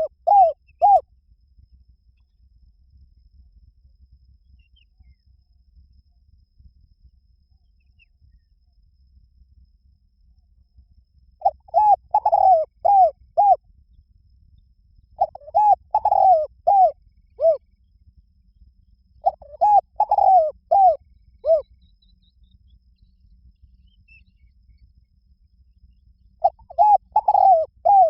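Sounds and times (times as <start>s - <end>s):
dove cooing: 0.0s - 1.0s, 11.4s - 13.6s, 15.2s - 17.6s, 19.2s - 21.6s, 26.4s - 28.0s.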